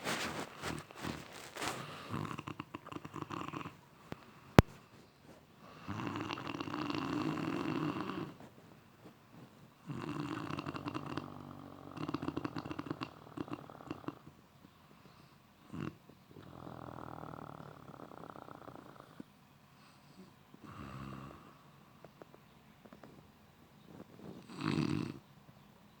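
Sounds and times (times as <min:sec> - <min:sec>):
woman snoring: 0:00.1 - 0:03.8, 0:05.7 - 0:08.4, 0:09.8 - 0:14.3, 0:20.6 - 0:21.5, 0:24.4 - 0:25.2.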